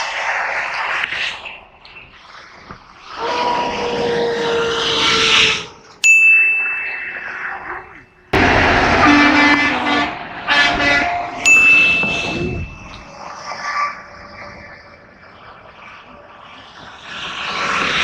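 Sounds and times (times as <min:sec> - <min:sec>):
road traffic passing: 0:05.8 - 0:14.5
bell ding: 0:06.0 - 0:08.2, 0:11.4 - 0:13.2
truck horns: 0:08.4 - 0:13.1.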